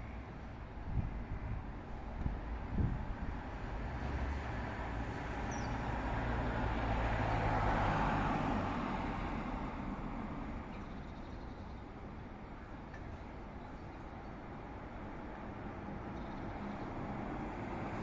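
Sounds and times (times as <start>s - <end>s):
motor vehicle passing: 3.9s - 10.2s.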